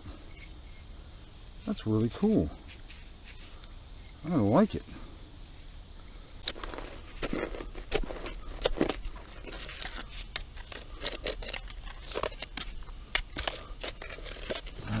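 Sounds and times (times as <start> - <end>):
digging in soil: 1.6 - 4.8, 6.2 - 15.0.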